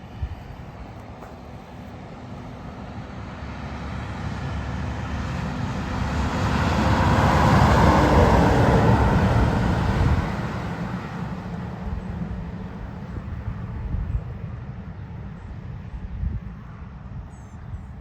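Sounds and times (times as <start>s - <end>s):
diesel truck driving by: 2.6s - 13.6s.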